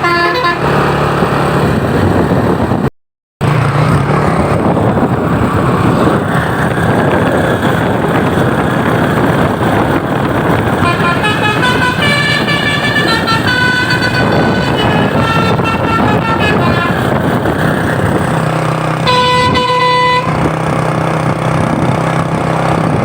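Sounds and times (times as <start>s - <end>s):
multi-tone horn playing tune: 0.0s - 0.8s, 10.7s - 17.2s, 19.0s - 20.5s
truck engine running: 0.0s - 23.0s.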